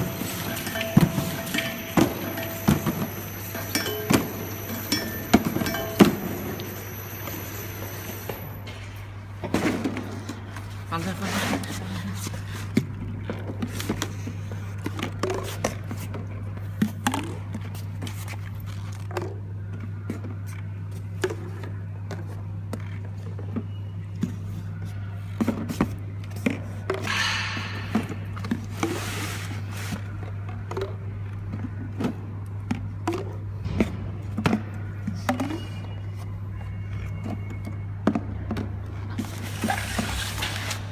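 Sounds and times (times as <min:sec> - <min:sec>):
clicks and knocks of bottles: 0:00.0 - 0:08.5
machine motor hum: 0:00.0 - 0:09.0.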